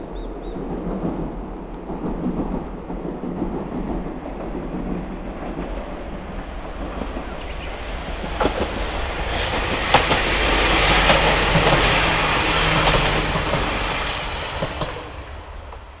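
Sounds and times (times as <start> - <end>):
diesel railcar passing: 0.0 - 16.0
wheels clacking over rail joints: 0.4 - 15.9.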